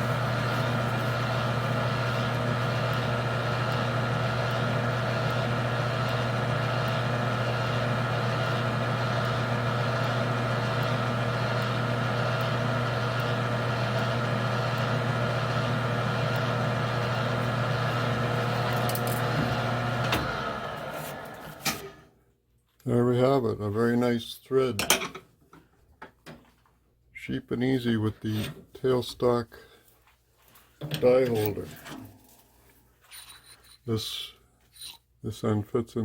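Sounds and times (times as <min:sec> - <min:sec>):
metal lathe humming: 0:00.0 - 0:21.8.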